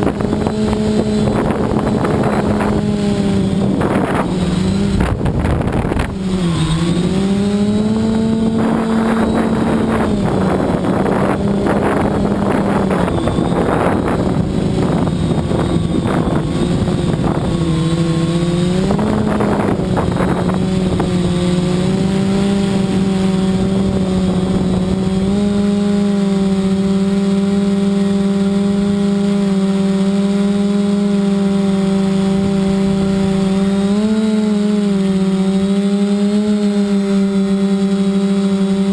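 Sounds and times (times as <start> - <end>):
wind buffeting microphone: 0.0 - 26.8
drone propellers humming: 0.0 - 38.9.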